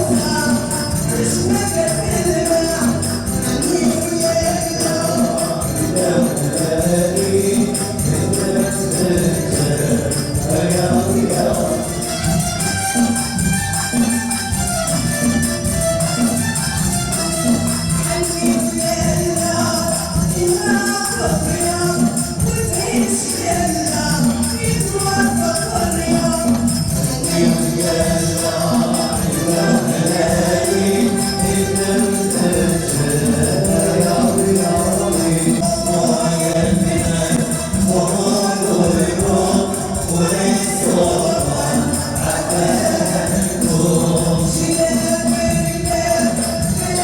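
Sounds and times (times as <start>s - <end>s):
group singing together: 0.0s - 47.0s
tambourines and hand drums: 0.0s - 47.0s.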